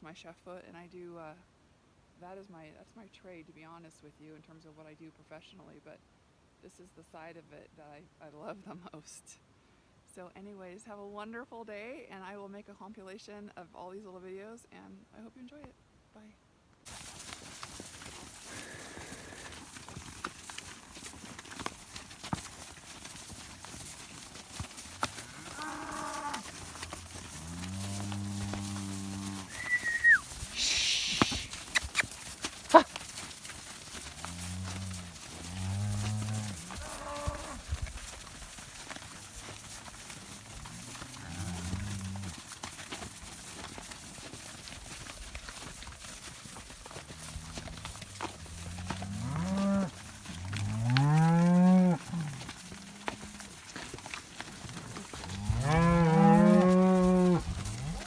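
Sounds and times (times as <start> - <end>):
cow mooing: 25.2 - 30.2, 34.2 - 37.6, 55.3 - 58.0
brief hiss: 30.5 - 32.0.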